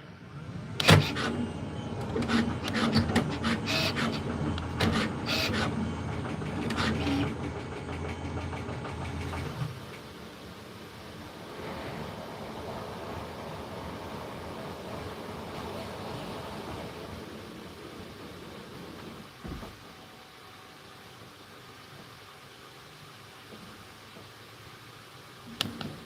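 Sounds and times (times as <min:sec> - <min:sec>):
printer motors whirring: 0:00.2 - 0:10.0
sharp clicks and clunks: 0:00.8 - 0:01.4.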